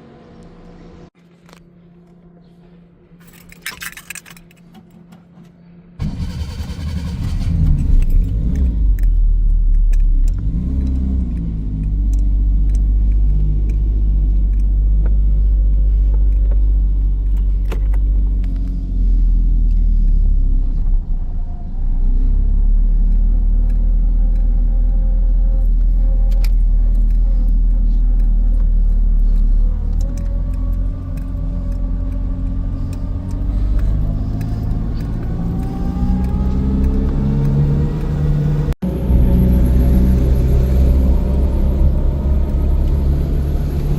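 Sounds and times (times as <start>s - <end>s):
keys jangling: 3.2s - 4.7s
car engine revving: 6.0s - 43.9s.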